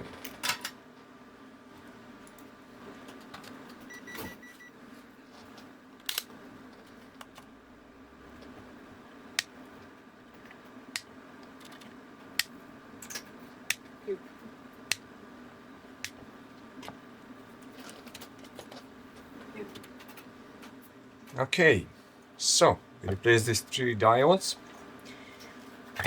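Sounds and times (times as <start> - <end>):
faint steady hum: 0.0 - 26.0
faint beep: 3.9 - 4.7.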